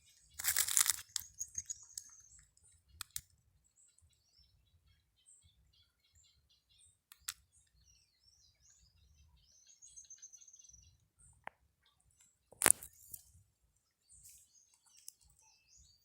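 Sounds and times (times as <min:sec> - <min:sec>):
songbirds chirping and calling: 0:00.0 - 0:16.0
sharp clicks: 0:03.0 - 0:03.3, 0:07.1 - 0:07.4.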